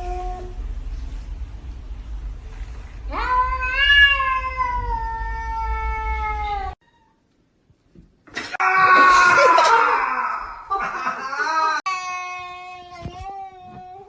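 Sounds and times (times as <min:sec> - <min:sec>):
cat yowling: 0:03.1 - 0:07.2.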